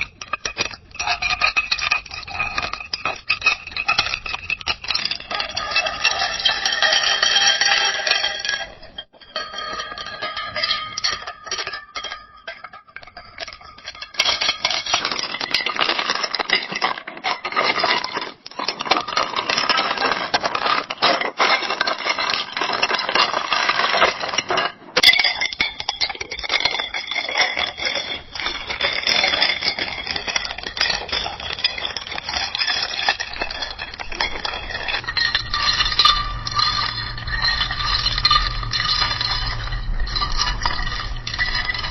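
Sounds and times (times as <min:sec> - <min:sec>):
ice cubes clinking in glass: 0:13.3 - 0:41.9.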